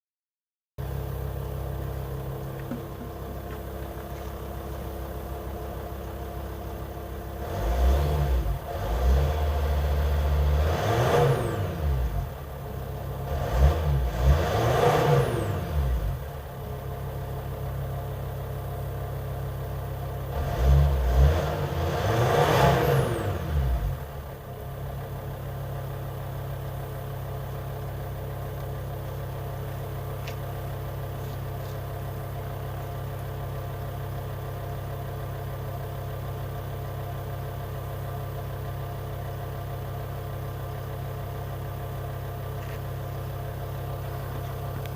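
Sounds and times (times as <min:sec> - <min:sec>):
diesel engine idling and revving: 0:00.8 - 0:44.9.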